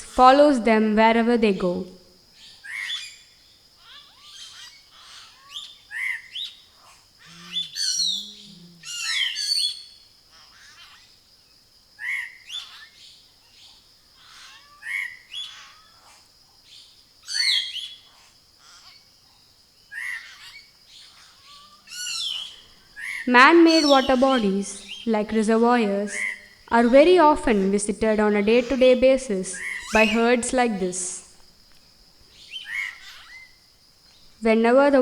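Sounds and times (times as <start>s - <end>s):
birds chirping and whistling: 4.1s - 6.6s, 7.2s - 9.9s, 14.3s - 15.9s, 17.3s - 18.0s, 20.0s - 31.3s, 32.3s - 35.0s
low hoots: 4.9s - 11.0s, 20.0s - 31.3s.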